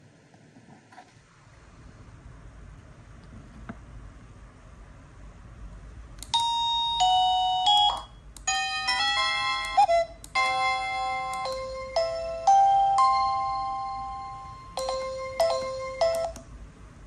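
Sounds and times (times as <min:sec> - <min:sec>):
electronic doorbell chime melody: 0:06.4 - 0:16.4.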